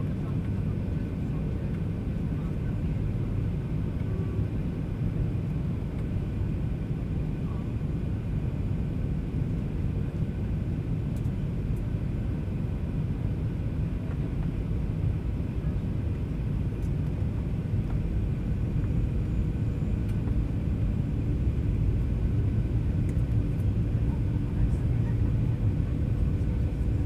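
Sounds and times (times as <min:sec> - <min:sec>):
airplane cabin rumble: 0:00.0 - 0:27.0.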